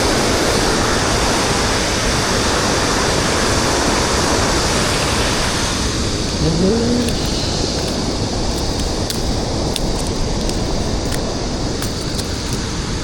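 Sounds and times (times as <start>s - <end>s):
brief rising vocal sound: 6.3s - 7.6s.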